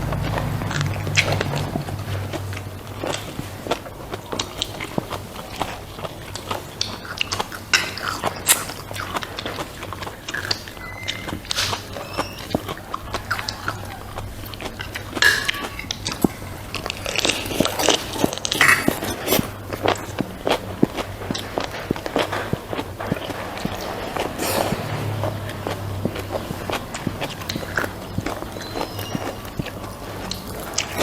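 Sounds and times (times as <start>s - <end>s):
low hum: 0.0s - 4.1s
person chewing crunchy food: 0.0s - 31.0s.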